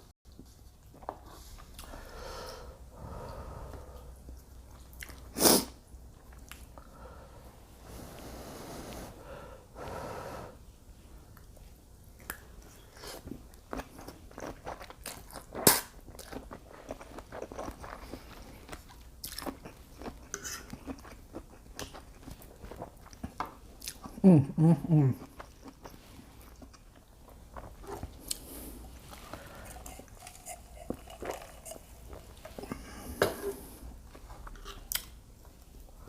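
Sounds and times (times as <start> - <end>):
person chewing food: 3.6 - 5.4, 11.4 - 24.2, 25.2 - 35.6.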